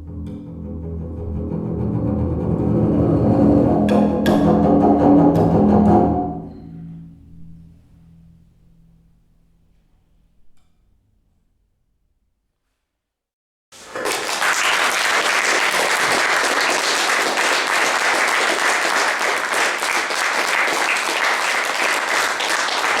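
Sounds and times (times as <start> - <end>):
audience applauding: 13.8 - 23.0.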